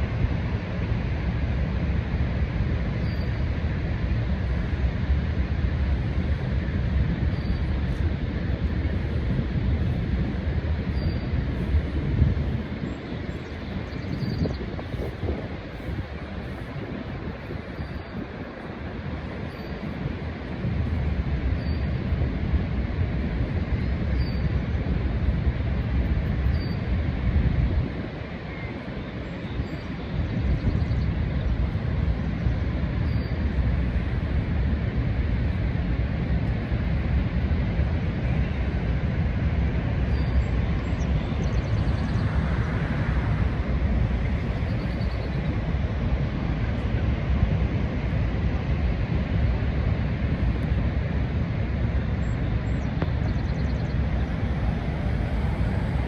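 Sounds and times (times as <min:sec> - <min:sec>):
waterfall roaring: 0:31.6 - 0:56.0.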